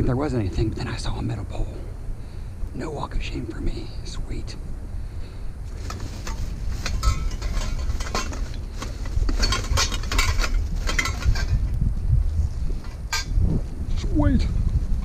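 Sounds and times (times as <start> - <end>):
metal pole clanking and rattling: 5.7 - 11.7, 12.8 - 13.4.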